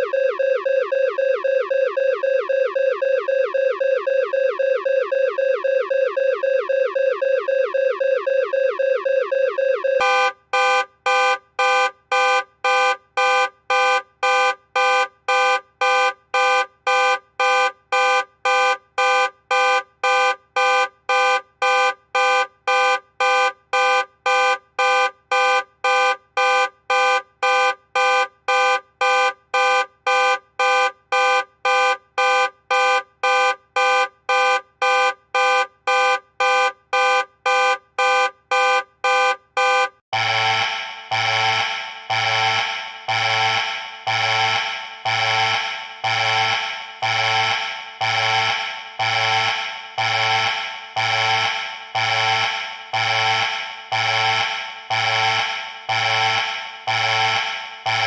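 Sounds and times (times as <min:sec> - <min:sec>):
warbling alarm siren: 0:00.0 - 0:10.7, 0:37.6 - 0:58.0.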